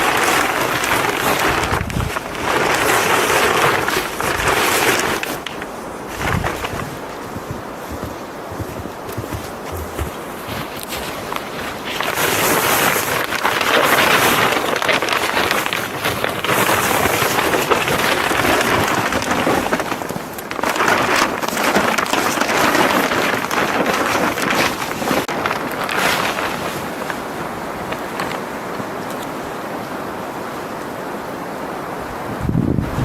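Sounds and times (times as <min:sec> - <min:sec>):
wind gusting across microphone: 0:00.0 - 0:33.0.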